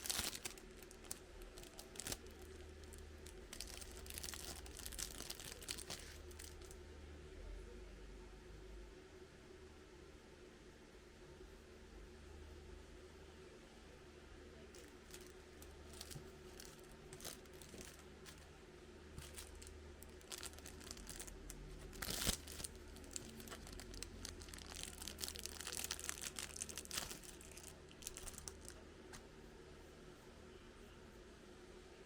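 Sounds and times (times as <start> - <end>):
packaging rustling: 0.0 - 6.7, 14.8 - 18.5, 19.2 - 28.8
packaging tearing: 0.0 - 6.7, 14.8 - 18.4, 19.2 - 28.7
packaging crinkling: 0.0 - 6.8, 14.8 - 18.5, 19.2 - 28.8.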